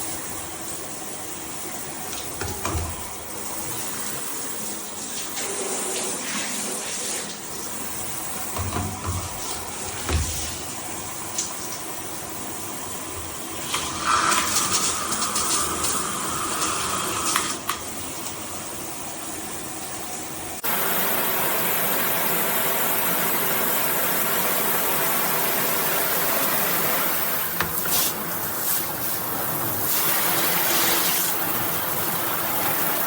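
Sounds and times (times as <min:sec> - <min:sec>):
shower head spraying water: 0:23.4 - 0:32.9.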